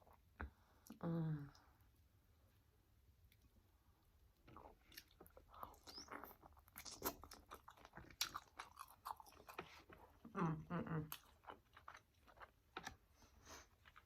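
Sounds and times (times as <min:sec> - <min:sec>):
wet chewing with crunches: 0:04.4 - 0:14.0.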